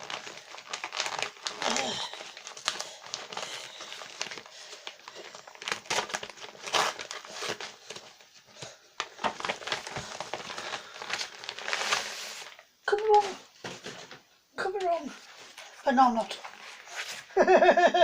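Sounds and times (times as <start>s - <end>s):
packaging tearing: 0.0s - 8.0s, 9.0s - 12.7s
packaging crinkling and rustling: 0.0s - 17.4s.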